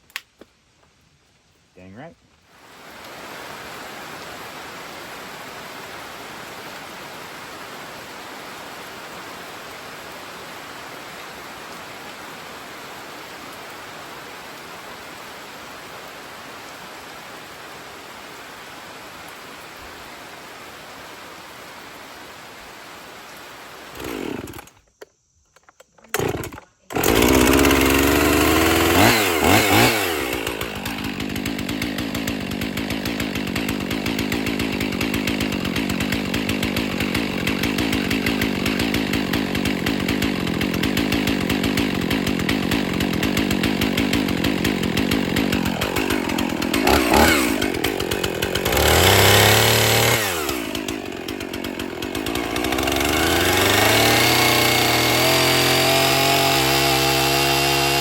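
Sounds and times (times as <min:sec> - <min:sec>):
chainsaw idling and revving: 0:04.8 - 0:19.5, 0:23.7 - 0:24.8, 0:26.1 - 0:58.0.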